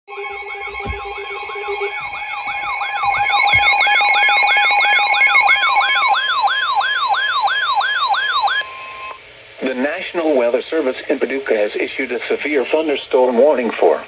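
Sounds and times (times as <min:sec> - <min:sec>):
steady alert tone: 0:00.1 - 0:06.1
falling siren-like alert sweep: 0:00.1 - 0:09.2.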